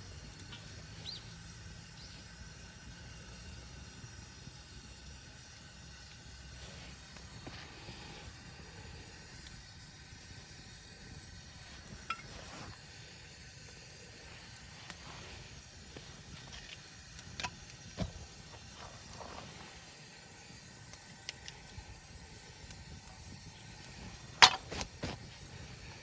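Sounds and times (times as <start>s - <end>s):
outdoor background hiss: 0.0s - 26.0s.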